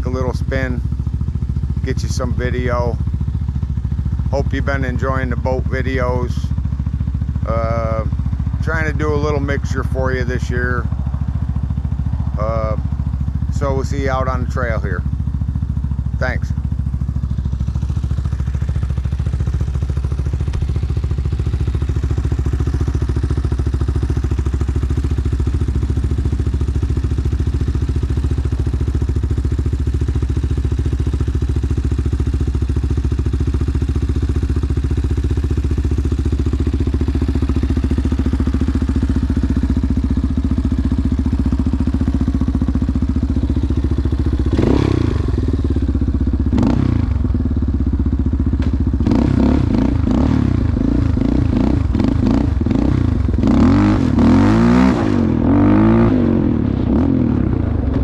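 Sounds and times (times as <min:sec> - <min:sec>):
atv engine running: 0:00.0 - 0:58.0.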